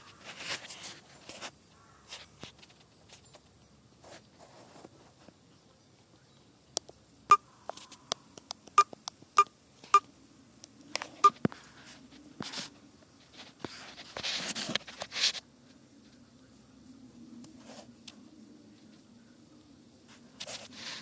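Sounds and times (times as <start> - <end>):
rustling: 0.0 - 6.1, 10.8 - 16.3, 20.1 - 21.0
faint high steady whine: 0.0 - 21.0.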